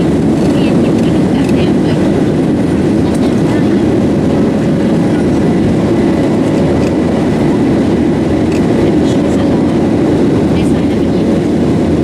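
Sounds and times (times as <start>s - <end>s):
airplane engine rumble: 0.0s - 12.0s
faint steady whine: 0.0s - 12.0s.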